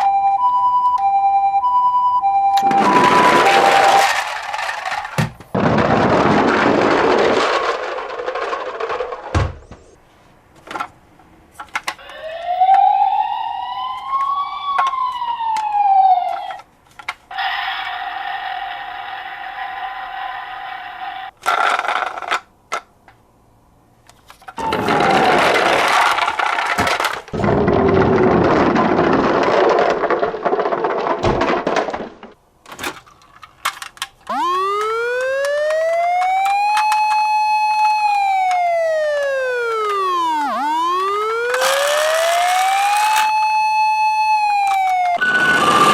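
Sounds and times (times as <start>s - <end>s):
steady siren tone: 0.0s - 4.1s, 12.0s - 16.6s, 34.3s - 45.9s
siren wailing: 0.0s - 4.4s, 12.0s - 16.6s, 24.6s - 26.4s, 34.2s - 45.9s
loud noise: 44.6s - 45.9s.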